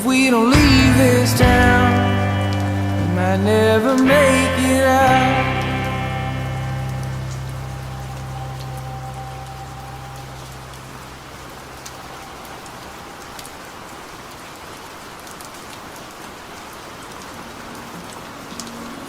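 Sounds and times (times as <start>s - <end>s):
rain falling: 0.0s - 19.0s
song held notes: 0.4s - 12.1s
raindrop ticks: 6.8s - 19.0s.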